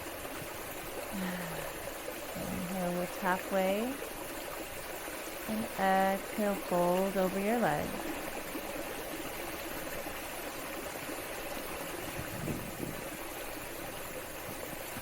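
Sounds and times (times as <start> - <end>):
waterfall rushing: 1.1 - 3.8.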